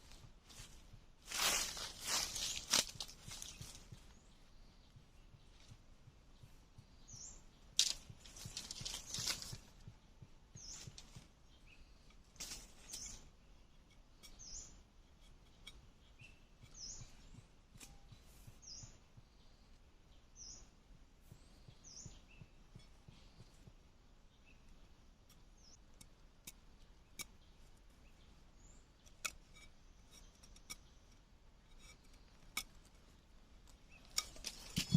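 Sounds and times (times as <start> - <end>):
scraping or rustling noise: 0.0 - 3.9, 7.8 - 9.7, 34.1 - 34.9
small bird chirping: 0.0 - 34.9.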